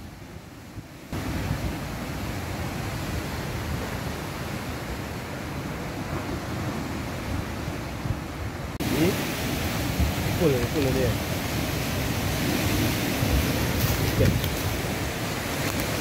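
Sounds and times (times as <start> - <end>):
sea surf on rocky shore: 0.0 - 16.0.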